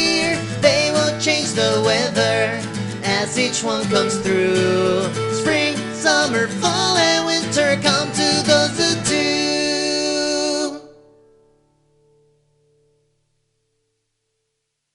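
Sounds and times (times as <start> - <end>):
children's sing-along song: 0.0 - 10.9.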